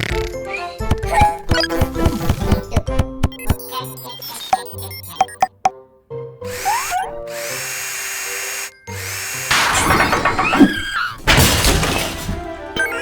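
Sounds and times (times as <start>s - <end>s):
background music: 0.0s - 13.0s
cartoon drill whirring: 6.5s - 11.2s.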